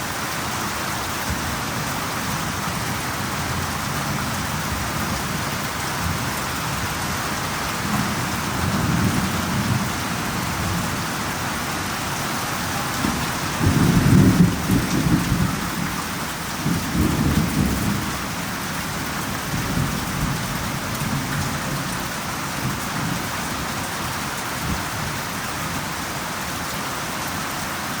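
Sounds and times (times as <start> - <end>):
heavy rain falling: 0.0 - 28.0
rolling thunder: 12.7 - 21.8.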